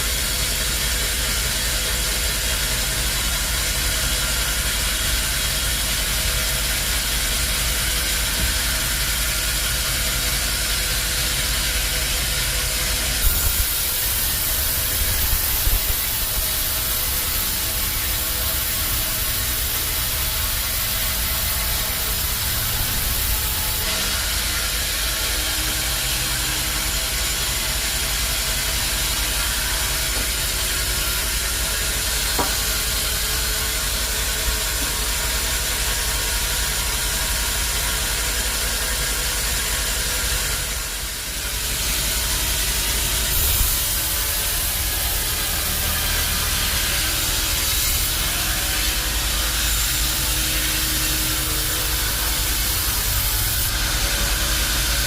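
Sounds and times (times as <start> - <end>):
band sawmill machinery running: 0.0 - 55.0
small knocks: 32.4 - 32.6.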